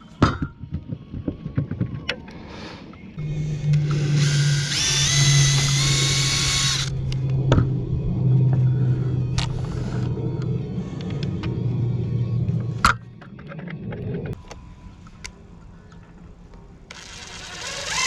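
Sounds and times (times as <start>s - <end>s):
power drill whining: 3.2s - 7.2s, 16.9s - 18.0s.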